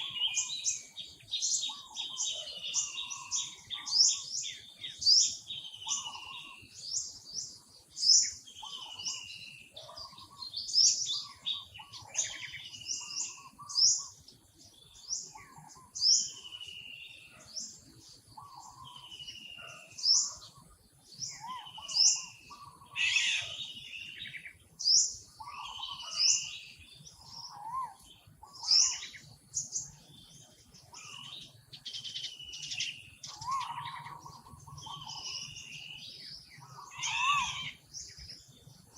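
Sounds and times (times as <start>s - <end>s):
whistled bird calls: 0.0s - 7.2s, 8.0s - 14.2s, 21.2s - 30.0s, 30.9s - 38.5s
birds chirping and calling: 0.0s - 38.9s.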